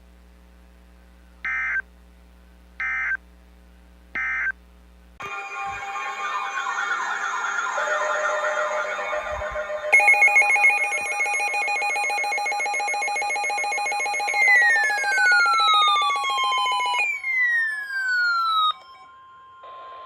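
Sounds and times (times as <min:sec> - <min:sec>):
electronic siren and alarm tones: 0:05.2 - 0:20.0.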